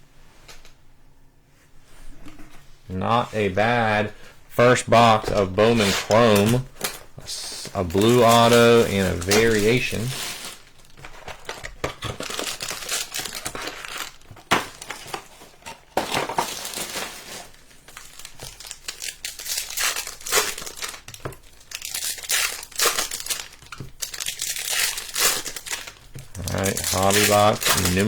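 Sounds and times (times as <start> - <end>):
card packaging crinkling and tearing: 4.7 - 28.0.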